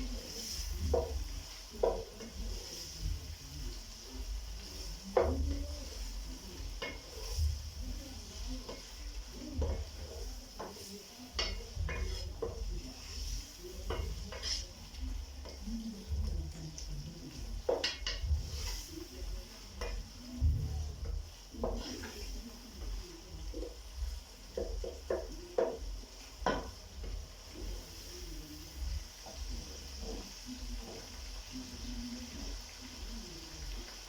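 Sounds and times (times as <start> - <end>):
wooden spoon scraping pot: 0.0 - 15.6, 17.2 - 27.8
vegetables sizzling in pot: 0.0 - 34.0.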